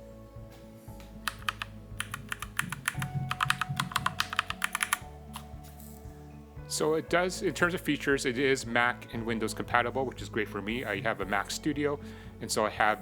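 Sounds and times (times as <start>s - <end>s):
mechanical keyboard keys clacking: 1.3s - 5.0s.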